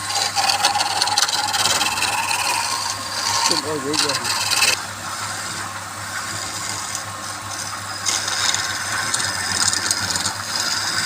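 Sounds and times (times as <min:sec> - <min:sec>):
tool scraping spinning wood: 0:00.0 - 0:11.0
wood lathe motor hum: 0:00.0 - 0:11.0.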